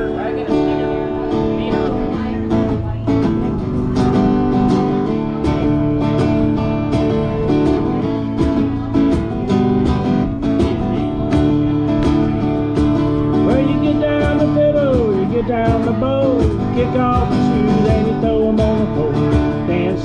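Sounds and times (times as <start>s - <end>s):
acoustic guitar strumming: 0.0s - 20.0s.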